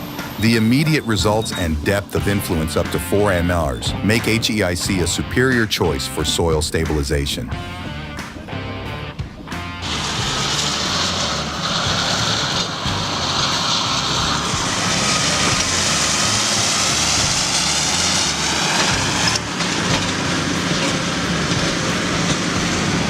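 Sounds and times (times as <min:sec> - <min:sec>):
heavy machinery rumble: 0:09.7 - 0:23.0.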